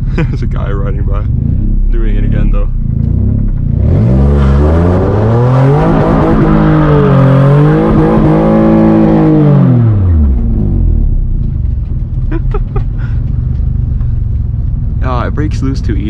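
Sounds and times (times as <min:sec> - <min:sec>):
car engine revving hard: 0:01.2 - 0:10.8.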